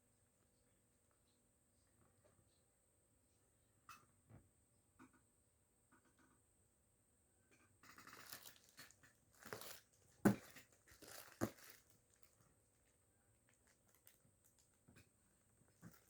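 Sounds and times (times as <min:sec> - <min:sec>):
packaging rustling and tearing: 0:07.9 - 0:12.4, 0:13.5 - 0:14.7.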